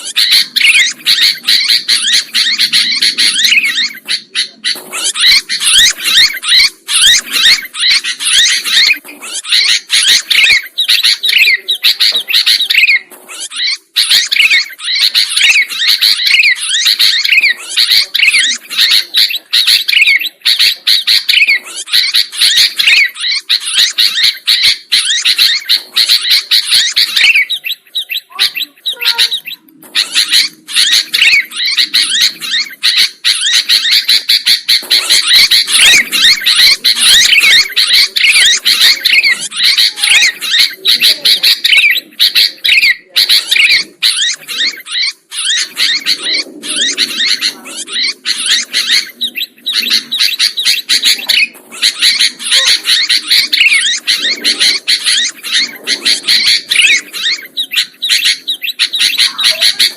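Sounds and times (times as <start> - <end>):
bulbuls chirping busily: 0.0 - 59.9.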